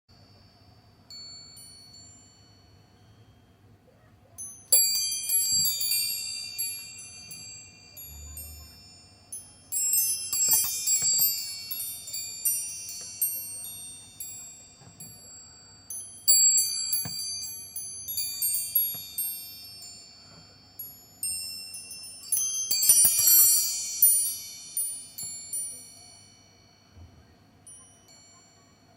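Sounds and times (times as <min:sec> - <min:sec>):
wind chime ringing: 0:00.2 - 0:28.9.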